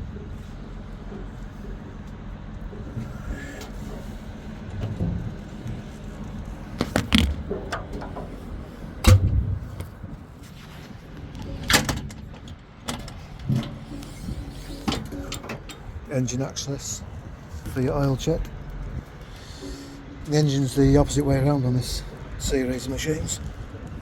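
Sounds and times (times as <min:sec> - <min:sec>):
metal doors clunking shut: 0:06.8 - 0:10.3, 0:11.4 - 0:22.6.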